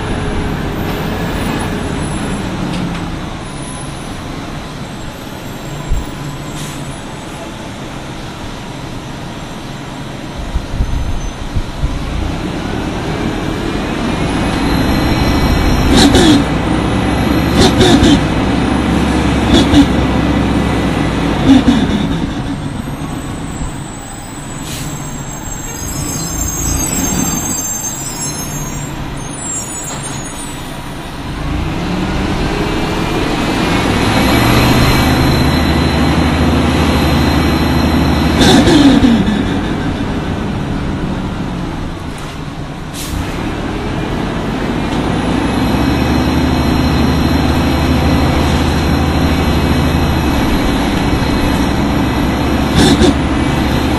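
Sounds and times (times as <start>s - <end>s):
bus engine: 0.0s - 53.9s
air brake hisses: 23.8s - 31.0s, 42.9s - 43.4s.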